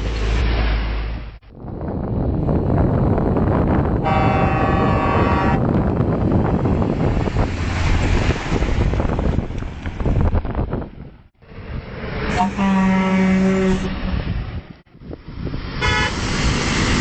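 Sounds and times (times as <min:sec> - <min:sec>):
road rumble: 0:00.0 - 0:17.0
wind buffeting microphone: 0:01.4 - 0:17.0
truck horn: 0:04.0 - 0:05.7, 0:12.3 - 0:14.2, 0:15.8 - 0:16.2.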